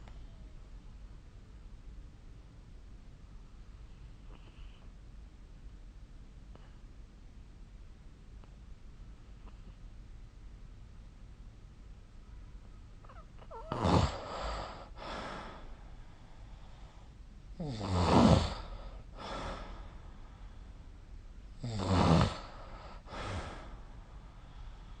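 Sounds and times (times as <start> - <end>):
person snoring: 13.5 - 15.7, 17.6 - 20.0, 21.6 - 23.8.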